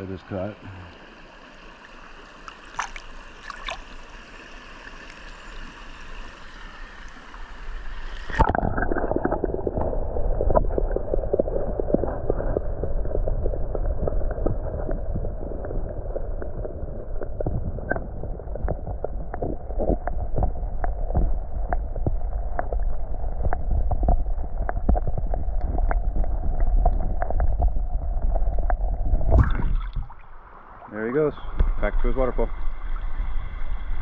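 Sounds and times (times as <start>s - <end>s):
creek water rushing: 0.0s - 9.1s.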